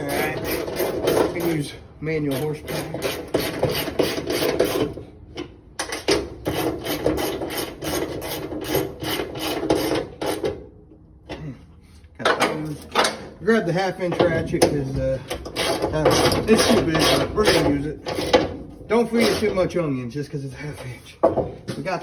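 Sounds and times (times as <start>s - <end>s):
hand ratchet clicking: 15.3s - 18.4s.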